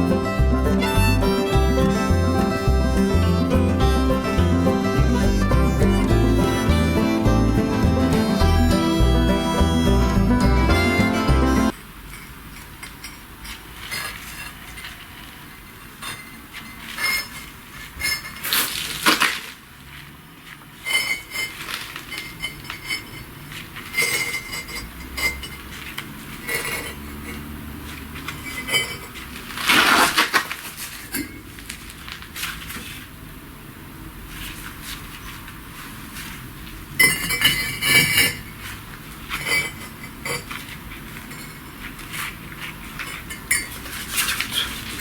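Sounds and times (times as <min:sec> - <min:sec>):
metal tools clinking on bricks: 0:11.7 - 0:18.9, 0:20.8 - 0:29.5, 0:37.0 - 0:38.6, 0:39.2 - 0:42.2, 0:42.9 - 0:45.0.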